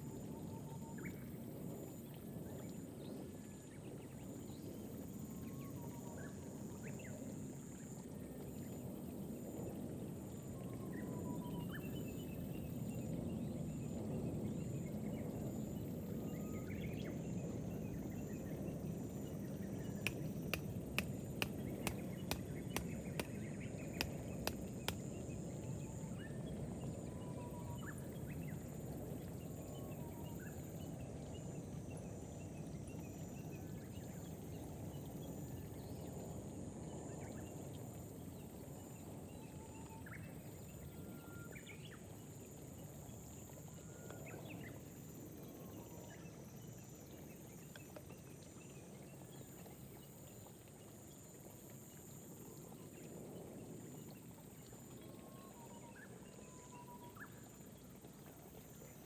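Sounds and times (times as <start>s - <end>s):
small birds chirping: 19.8s - 25.0s
gentle rain falling: 19.9s - 25.0s
sharp clicks: 20.1s - 23.3s, 24.0s - 25.0s.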